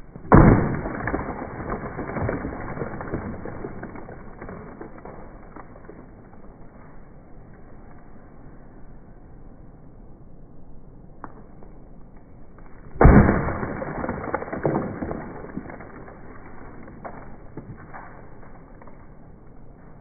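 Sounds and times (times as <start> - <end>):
clattering debris: 0.0 - 6.4, 13.0 - 19.2
sledgehammer smashing object: 0.2 - 5.2, 13.0 - 16.2.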